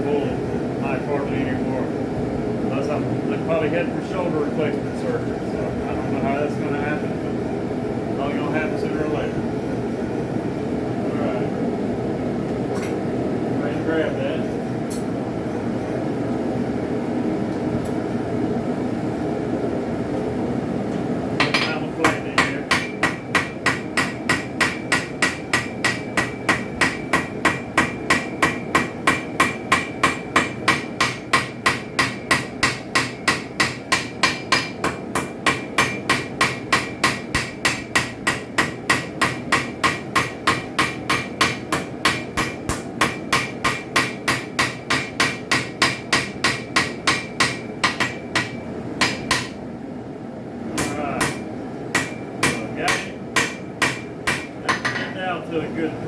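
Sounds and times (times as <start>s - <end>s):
hammer striking steel on anvil: 21.4s - 49.6s, 50.8s - 55.2s.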